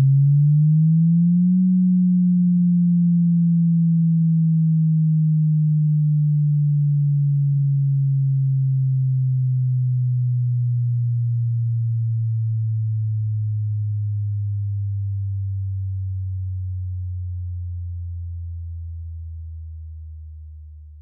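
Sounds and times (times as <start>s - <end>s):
low sine tone sweep: 0.0s - 21.0s.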